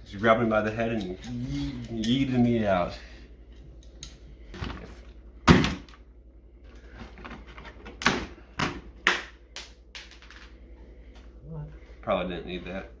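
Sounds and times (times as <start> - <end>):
computer parts knocking and snapping: 7.2 - 9.3.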